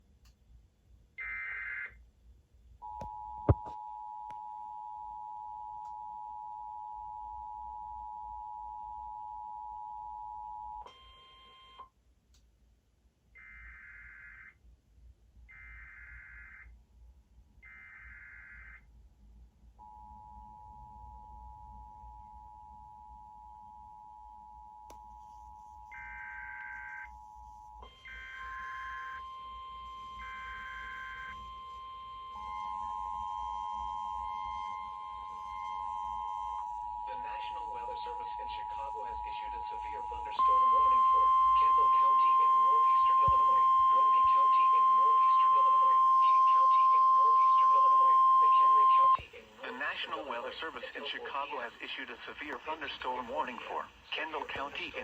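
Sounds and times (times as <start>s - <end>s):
two-tone attention signal: 27.8s - 49.2s.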